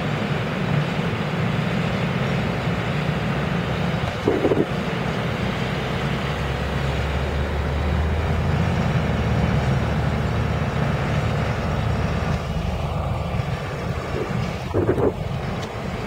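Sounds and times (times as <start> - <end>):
heavy vehicle engine running: 0.0 - 16.0
low hum: 8.1 - 16.0.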